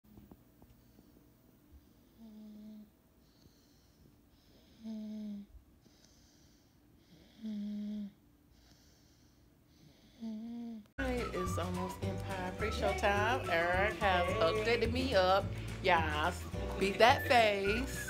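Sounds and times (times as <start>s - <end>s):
person snoring: 2.1s - 2.9s, 4.5s - 6.3s, 7.1s - 8.8s, 9.8s - 10.9s.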